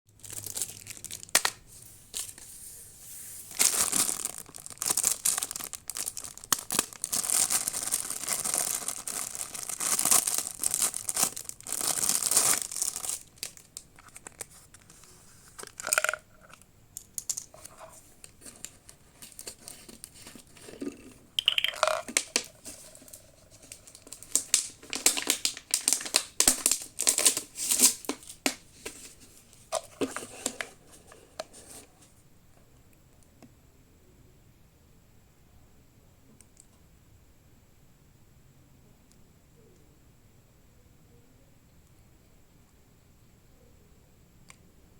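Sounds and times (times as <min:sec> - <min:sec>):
plastic packaging crinkling: 0:00.1 - 0:16.6, 0:17.2 - 0:32.0.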